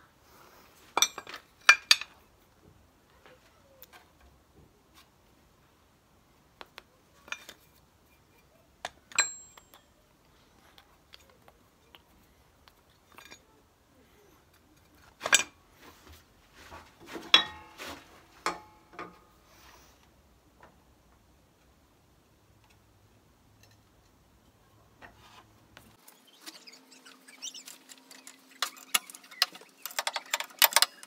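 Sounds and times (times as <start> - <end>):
metal tools clinking: 0.9 - 2.3, 7.2 - 13.6, 14.2 - 15.6, 17.1 - 19.2, 26.1 - 31.0.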